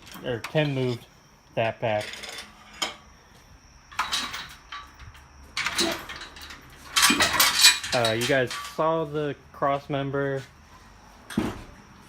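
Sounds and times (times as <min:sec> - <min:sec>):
clattering and scraping: 0:01.8 - 0:03.2, 0:03.9 - 0:08.8.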